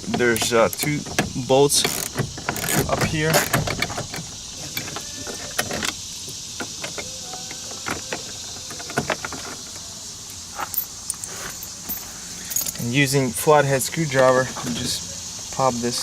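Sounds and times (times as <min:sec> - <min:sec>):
faint steady hiss: 0:00.0 - 0:16.0.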